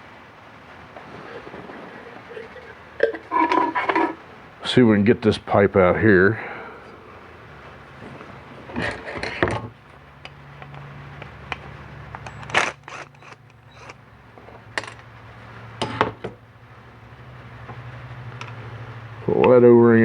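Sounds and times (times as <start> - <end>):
steady low hum: 0.0 - 20.0
hand tools clinking and scraping metal: 0.9 - 4.4, 7.9 - 11.3, 12.1 - 15.1.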